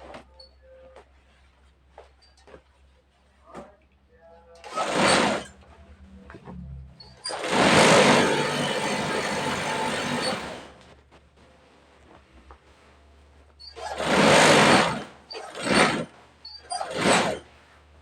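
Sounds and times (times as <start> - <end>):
industrial sewing machine running: 4.6 - 5.5, 7.3 - 10.8, 13.8 - 16.1, 16.8 - 17.4.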